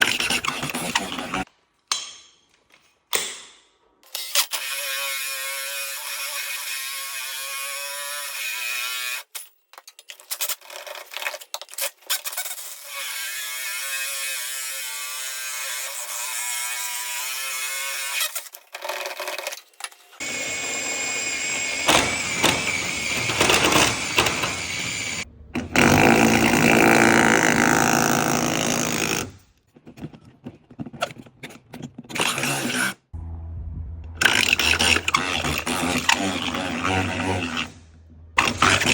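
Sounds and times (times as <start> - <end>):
core drill motor whining: 20.2 - 29.3
core bit grinding: 20.2 - 33.1, 34.1 - 38.9.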